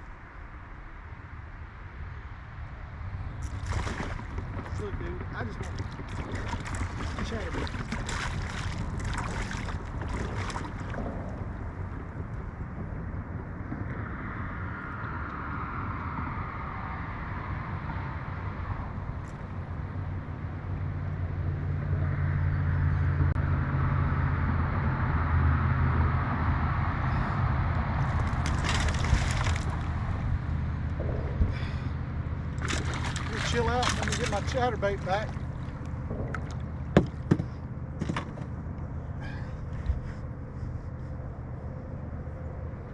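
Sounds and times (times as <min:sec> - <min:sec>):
wind: 0:00.0 - 0:42.9
water noise: 0:03.0 - 0:13.6, 0:28.0 - 0:39.5
boat motor humming: 0:03.2 - 0:12.5, 0:28.0 - 0:42.9.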